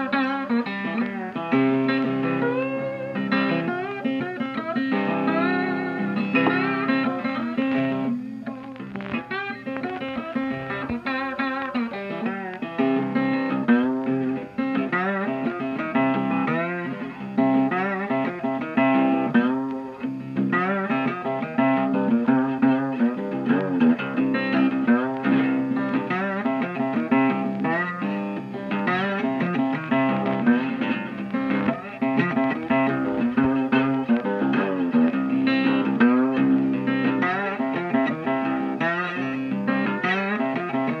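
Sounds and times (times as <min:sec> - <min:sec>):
blues guitar music: 0:00.0 - 0:41.0.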